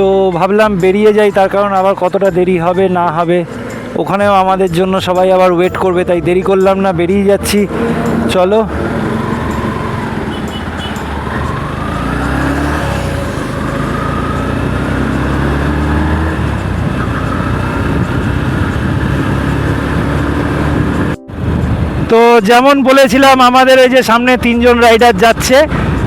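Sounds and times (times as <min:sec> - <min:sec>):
road and wind noise: 0:00.0 - 0:26.0
motorcycle engine running: 0:07.7 - 0:22.1.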